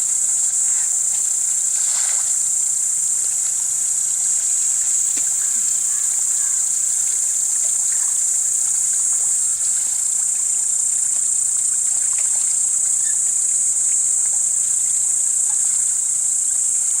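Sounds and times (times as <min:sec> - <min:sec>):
insects chorus: 0:00.0 - 0:17.0.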